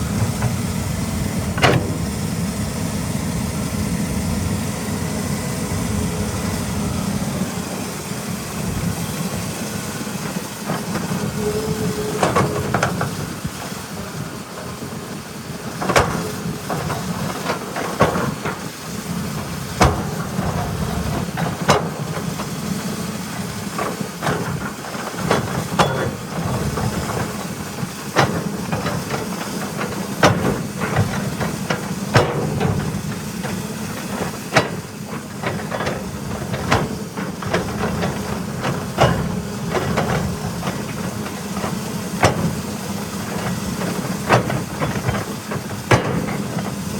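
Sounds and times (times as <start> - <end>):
excavator diesel engine running: 0.0 - 46.9
machine clanks and knocks: 1.4 - 2.4, 10.2 - 22.6, 23.4 - 46.9.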